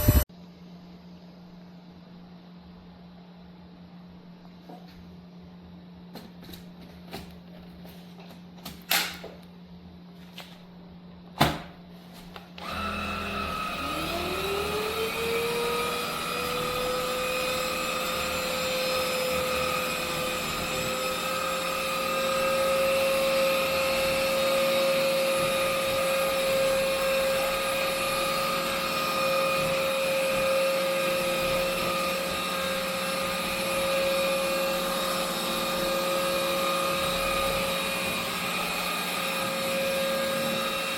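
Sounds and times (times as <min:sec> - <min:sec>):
stick vacuum motor whine: 0:00.0 - 0:00.3, 0:12.6 - 0:40.9.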